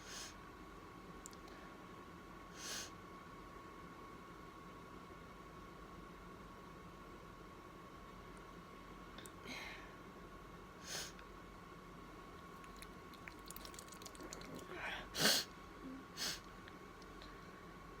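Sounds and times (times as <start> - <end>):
woman sneezing: 15.1 - 15.5.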